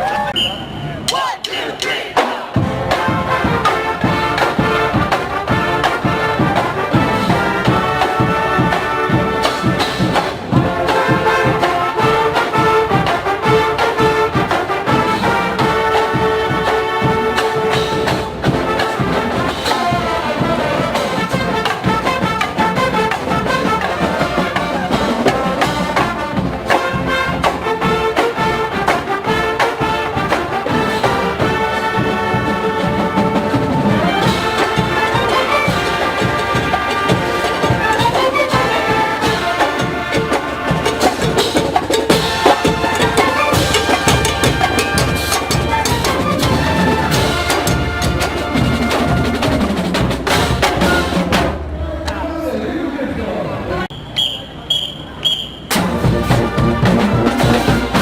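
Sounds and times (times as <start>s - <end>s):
trumpets and trombones: 0.0s - 51.8s, 53.6s - 58.0s
drums keeping a steady beat: 1.0s - 52.1s, 54.0s - 58.0s.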